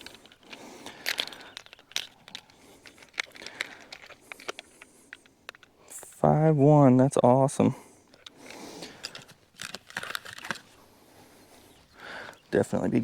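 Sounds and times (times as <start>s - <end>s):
light clicks and rustling: 0.0s - 6.2s, 8.1s - 10.8s.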